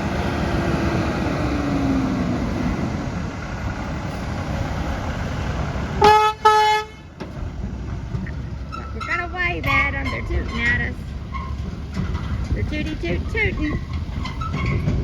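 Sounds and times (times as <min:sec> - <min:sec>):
truck engine running: 0:00.0 - 0:15.0
truck horn blasts: 0:06.0 - 0:07.1.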